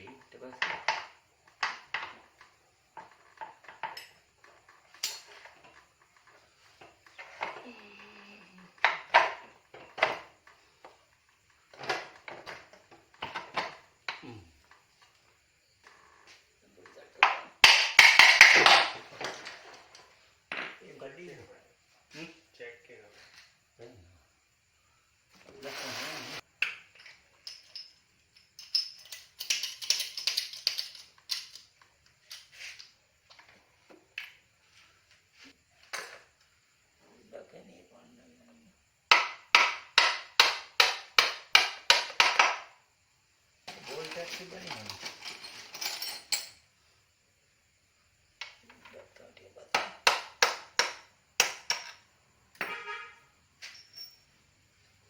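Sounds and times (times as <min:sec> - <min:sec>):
metal parts clanking: 0:27.4 - 0:31.7, 0:43.7 - 0:46.6.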